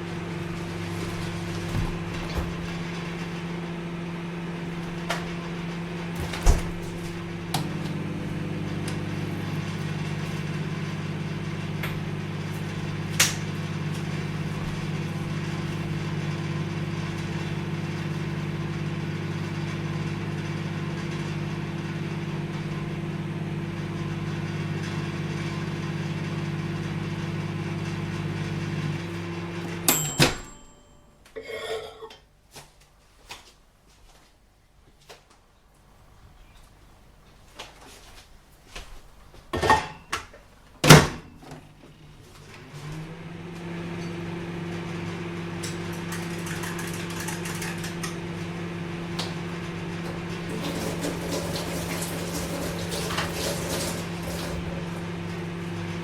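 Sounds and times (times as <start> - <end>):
microwave oven humming: 0.0 - 32.4, 38.7 - 56.0
microwave clicks: 29.8 - 30.7.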